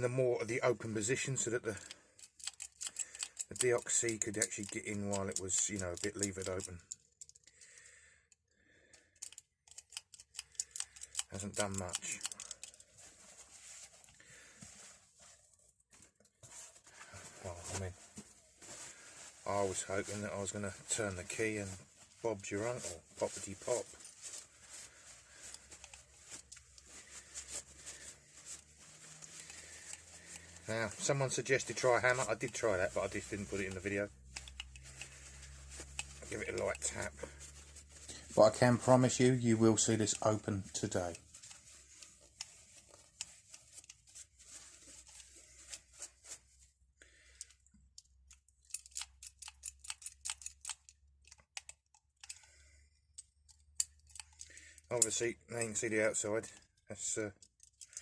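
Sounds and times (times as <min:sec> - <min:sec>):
key clicking in padlock: 0:02.2 - 0:03.6, 0:09.1 - 0:12.8, 0:48.3 - 0:52.3.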